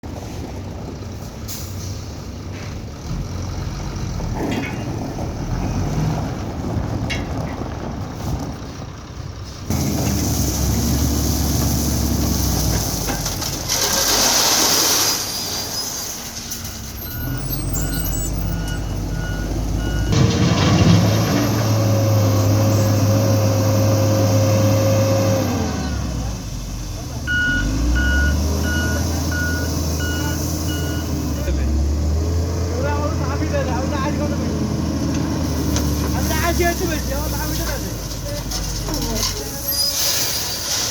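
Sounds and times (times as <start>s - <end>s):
diesel engines running: 0.0s - 40.9s
reversing alarm beeping: 16.6s - 20.2s, 27.3s - 31.2s.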